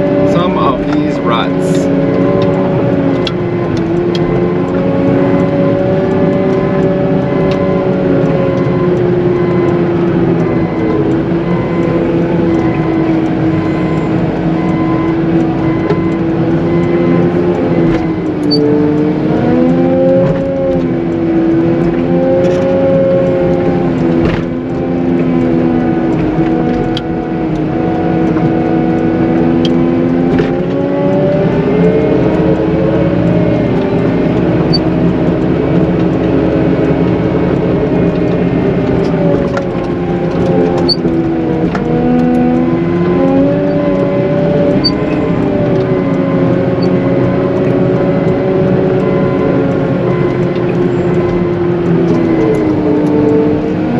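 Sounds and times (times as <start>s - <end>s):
loader diesel engine under load: 0.0s - 3.9s.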